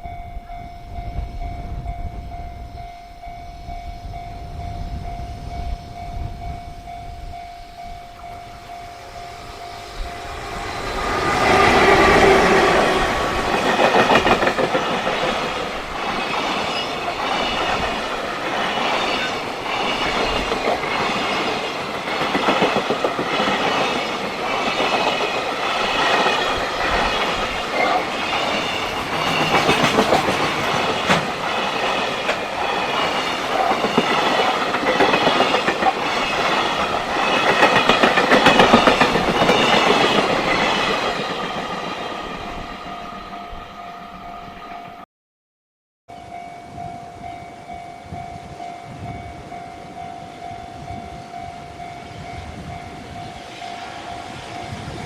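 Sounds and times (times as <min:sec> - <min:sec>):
train wheels clattering over rails: 0:10.2 - 0:42.7.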